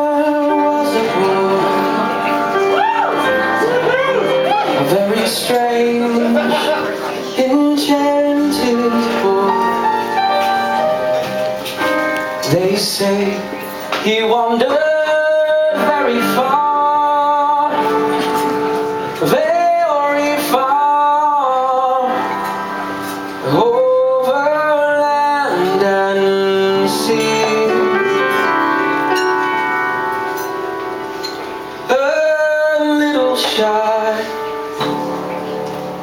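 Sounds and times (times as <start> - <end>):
person singing long notes: 0.0 - 11.1
instrumental accompaniment: 0.0 - 36.0.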